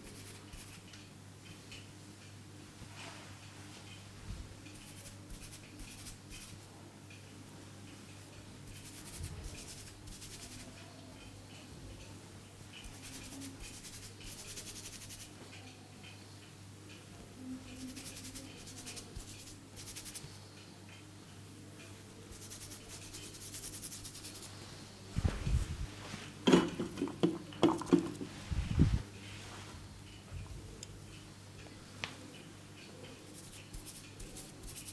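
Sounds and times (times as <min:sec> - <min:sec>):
hands scratching hair and scalp: 0:08.7 - 0:10.7, 0:12.8 - 0:15.4, 0:17.8 - 0:20.4, 0:22.3 - 0:24.6, 0:25.2 - 0:29.0, 0:33.3 - 0:34.9.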